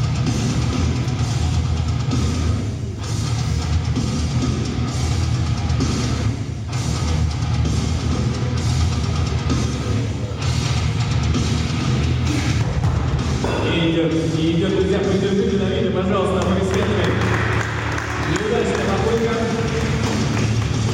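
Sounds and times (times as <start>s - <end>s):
heavy metal music: 0.0s - 20.9s.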